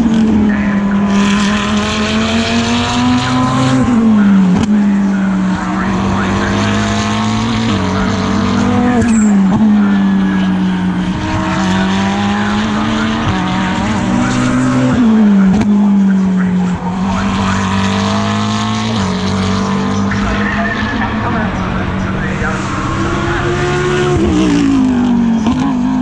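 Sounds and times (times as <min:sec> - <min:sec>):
race car engine: 0:00.0 - 0:26.0.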